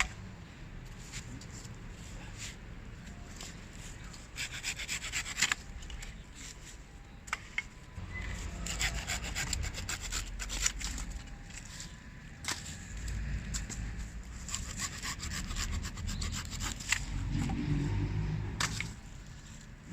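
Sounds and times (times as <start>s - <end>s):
saw rasping on wood: 4.4s - 5.6s, 8.2s - 11.2s, 14.4s - 18.9s.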